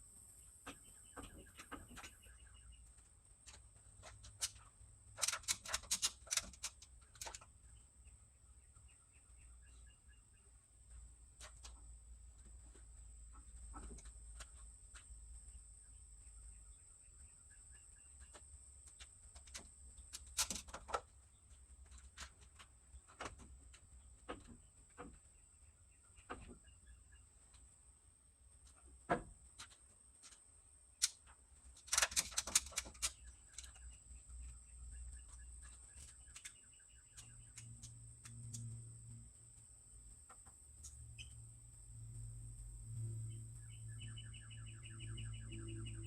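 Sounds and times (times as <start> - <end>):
faint bird chirps: 0.3 - 6.4, 7.1 - 11.8, 13.3 - 18.6, 32.1 - 39.2, 40.4 - 42.3, 42.9 - 46.0.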